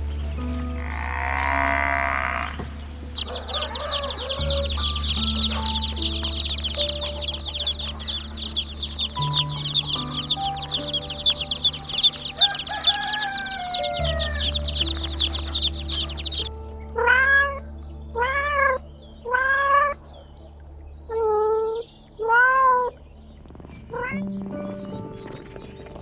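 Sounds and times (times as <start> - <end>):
high-pitched chirping: 0.0 - 16.5
background music: 0.0 - 26.0.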